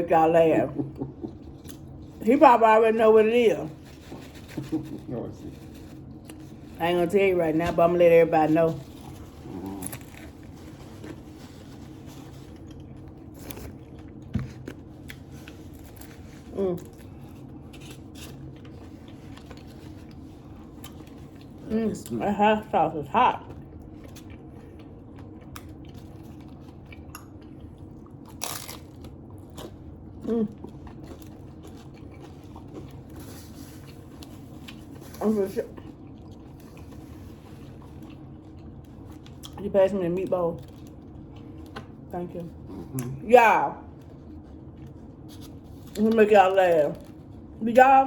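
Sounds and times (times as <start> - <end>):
taco shells crunching: 8.8 - 22.1, 23.6 - 35.2
crunching of hard taco shell: 28.0 - 30.1.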